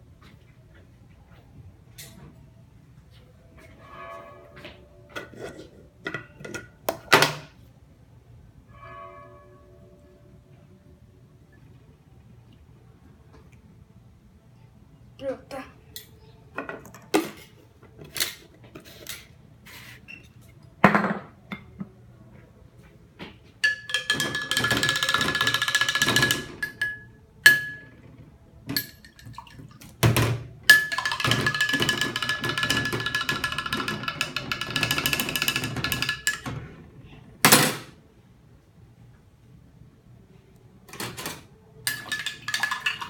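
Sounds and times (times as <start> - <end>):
rattling with high tone: 23.6 - 29.2, 30.7 - 36.8
dishes and utensils clinking: 23.6 - 36.7, 40.9 - 43.0.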